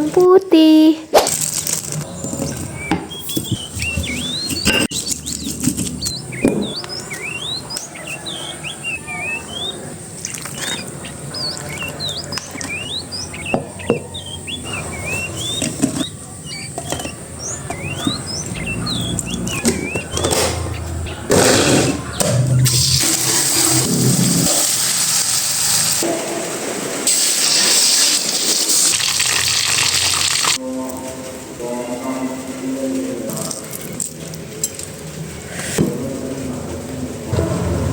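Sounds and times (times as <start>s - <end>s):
birds chirping: 2.0s - 23.0s.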